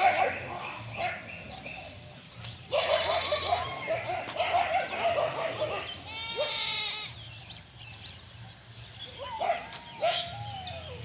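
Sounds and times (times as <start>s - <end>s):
goat bleating: 3.0s - 3.8s, 6.0s - 7.2s.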